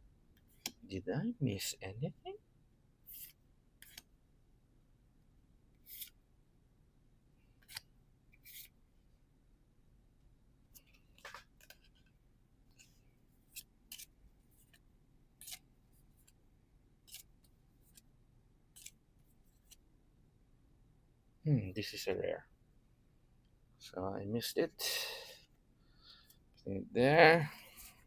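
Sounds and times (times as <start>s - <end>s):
trading cards sliding: 3.1s - 4.1s, 5.8s - 6.2s, 7.6s - 8.7s, 10.8s - 12.0s, 12.8s - 14.8s, 15.4s - 15.6s, 17.1s - 18.0s, 18.8s - 19.8s.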